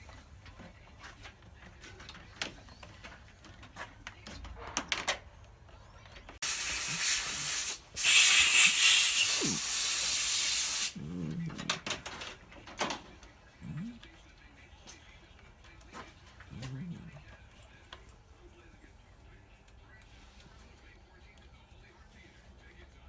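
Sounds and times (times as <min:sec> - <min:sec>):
loud even hiss: 0:06.4 - 0:11.0.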